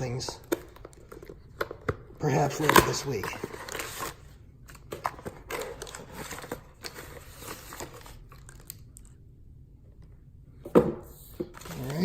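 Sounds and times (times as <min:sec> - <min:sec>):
packaging rustling and crinkling: 0:00.4 - 0:09.2.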